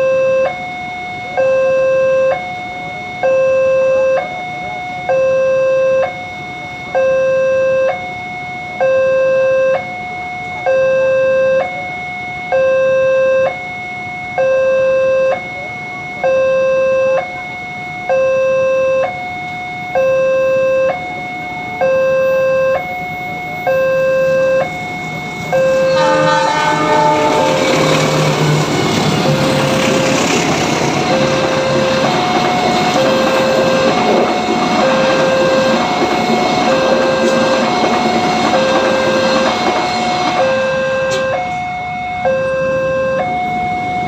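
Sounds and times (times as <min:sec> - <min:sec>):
railroad crossing two-tone alarm: 0:00.0 - 0:44.0
approaching train: 0:24.2 - 0:44.0.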